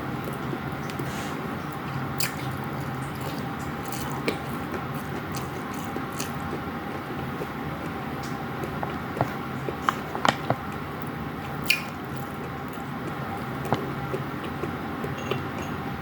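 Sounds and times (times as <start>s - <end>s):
steady low hum: 0.0s - 16.0s
wet squishy chewing: 0.1s - 15.7s
sharp mouth clicks: 11.6s - 12.0s.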